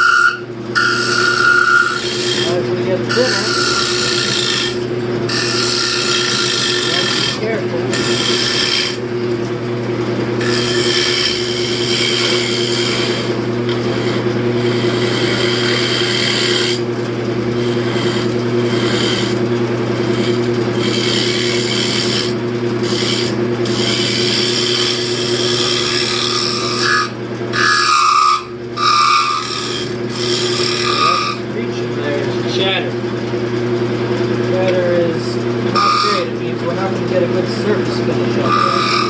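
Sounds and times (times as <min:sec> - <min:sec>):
turning tool scraping wood: 0:00.0 - 0:09.6, 0:10.2 - 0:33.0, 0:34.2 - 0:39.0
wood lathe humming: 0:00.0 - 0:39.0.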